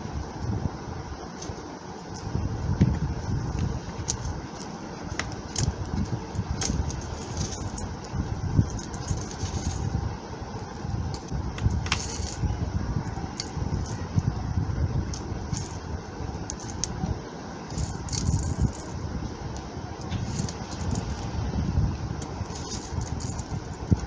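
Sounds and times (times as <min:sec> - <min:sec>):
steady low rumble: 0:00.0 - 0:24.0
laptop parts clicking and rattling: 0:03.5 - 0:10.0, 0:10.6 - 0:14.1, 0:15.1 - 0:15.8, 0:16.4 - 0:17.0, 0:17.7 - 0:21.3, 0:22.2 - 0:24.0.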